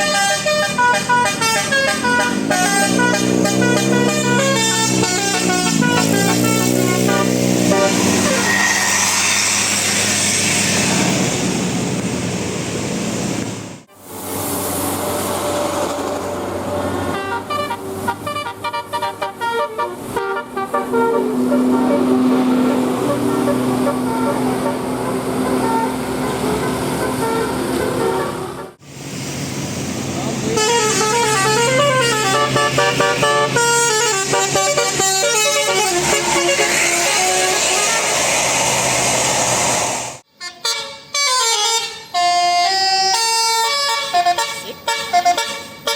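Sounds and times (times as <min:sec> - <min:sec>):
musical bus horn: 0:00.0 - 0:09.5, 0:16.9 - 0:28.8, 0:30.6 - 0:38.1, 0:40.3 - 0:45.9
rushing vehicle noise: 0:00.0 - 0:40.3.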